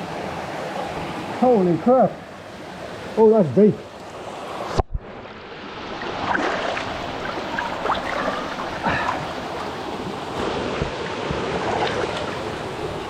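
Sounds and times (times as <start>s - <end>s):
flowing water rushing: 0.0s - 13.0s
water sloshing around wading person: 5.6s - 13.0s.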